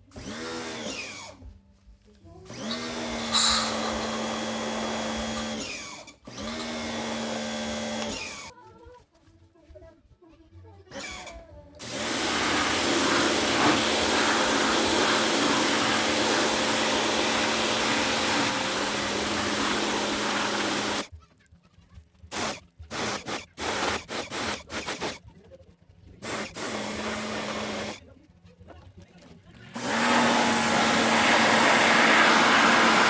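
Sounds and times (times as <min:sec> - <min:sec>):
pump motor hum: 0:00.0 - 0:01.4, 0:02.5 - 0:08.5, 0:11.8 - 0:21.1, 0:26.2 - 0:28.0, 0:29.7 - 0:33.0
pressure washer spraying water: 0:02.5 - 0:05.9, 0:11.8 - 0:21.1, 0:22.3 - 0:25.2, 0:26.2 - 0:28.0, 0:29.8 - 0:33.0.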